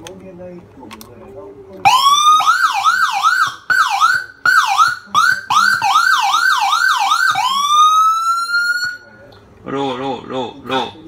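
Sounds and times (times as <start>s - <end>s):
electronic siren yelp: 1.9s - 9.1s
siren slow rising wail: 1.9s - 9.1s.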